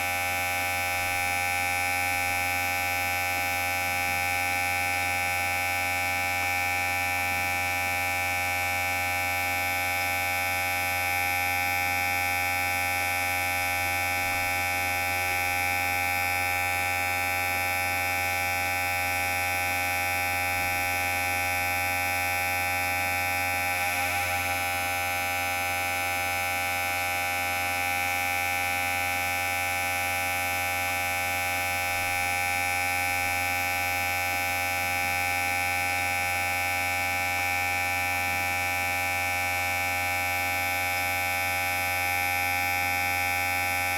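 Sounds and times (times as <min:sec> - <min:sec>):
electric hair clipper buzzing: 0:09.2 - 0:26.3, 0:29.9 - 0:36.3.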